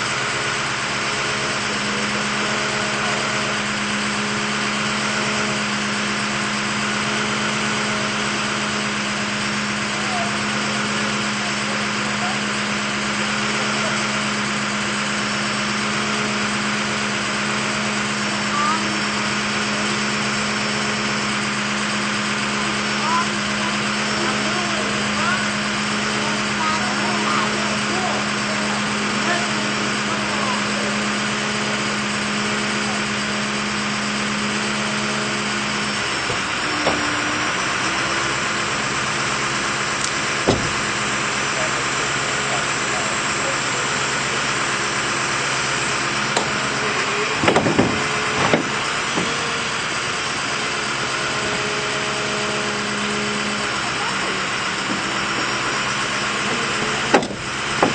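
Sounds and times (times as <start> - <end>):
engine droning steadily: 0.0 - 57.9.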